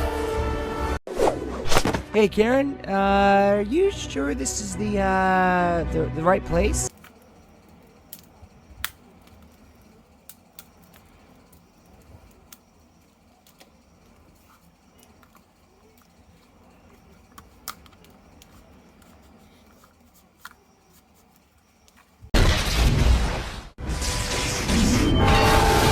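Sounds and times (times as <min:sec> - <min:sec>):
low background hum: 0:06.9 - 0:22.3.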